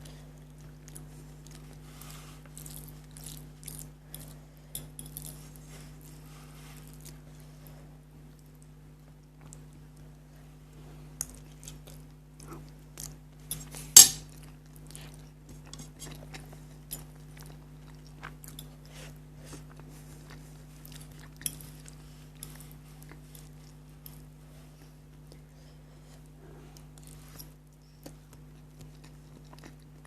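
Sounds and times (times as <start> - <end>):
chewing noodles: 0.4 - 4.4, 14.4 - 30.0
sharp loud clink: 14.0 - 14.2.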